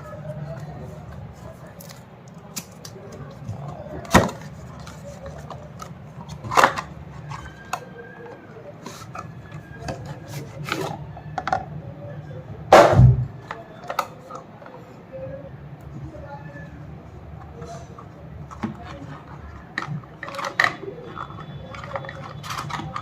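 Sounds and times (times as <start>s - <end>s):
heavy thud: 12.7s - 13.3s.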